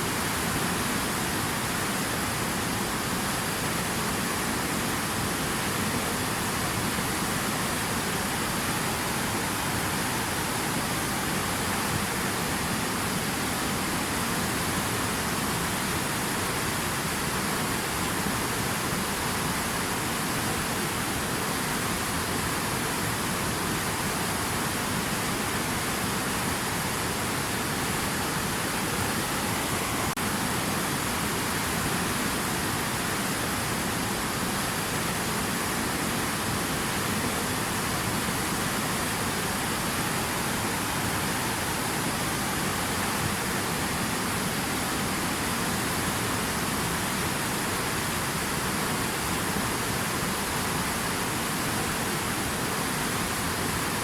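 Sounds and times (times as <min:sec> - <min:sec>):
water rushing: 0:00.0 - 0:54.0.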